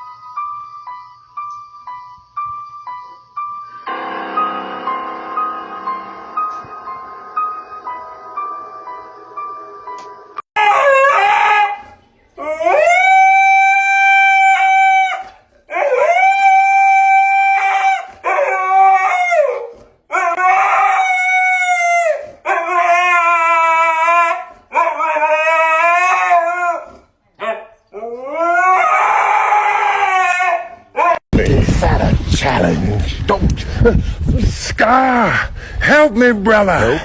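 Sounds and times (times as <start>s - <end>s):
dog howling: 10.2s - 31.2s.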